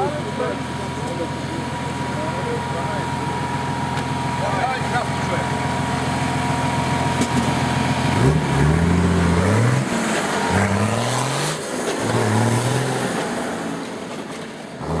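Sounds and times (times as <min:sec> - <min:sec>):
engine revving hard: 0:07.9 - 0:13.8, 0:14.8 - 0:15.0.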